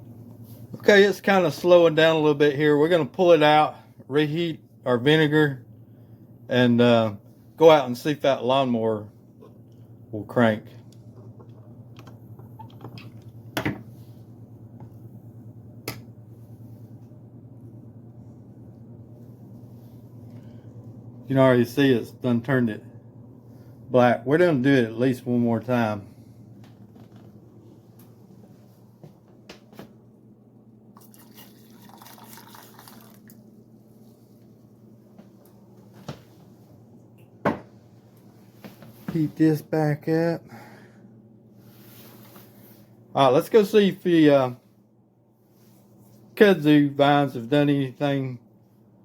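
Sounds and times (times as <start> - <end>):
steady low hum: 0.0 - 49.0
liquid dripping in a jar: 31.0 - 33.5.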